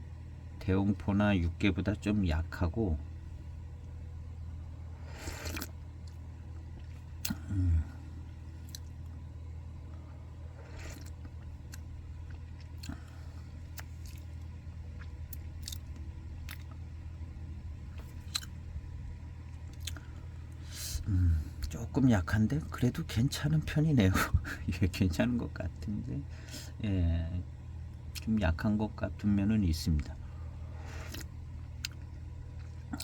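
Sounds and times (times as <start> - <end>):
low room hum: 0.0 - 33.0
low voice hum: 0.0 - 33.0
slurping sips of tea: 5.0 - 5.7, 10.5 - 11.2.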